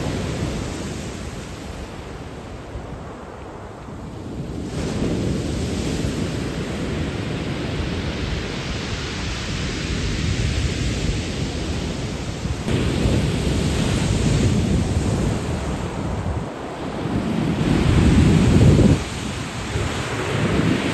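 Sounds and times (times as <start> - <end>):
ocean waves on pebble beach: 4.6 - 20.9.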